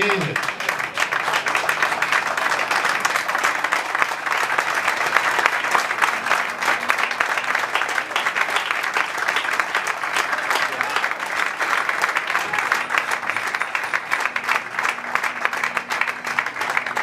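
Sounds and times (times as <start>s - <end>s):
audience applauding: 0.0s - 17.0s.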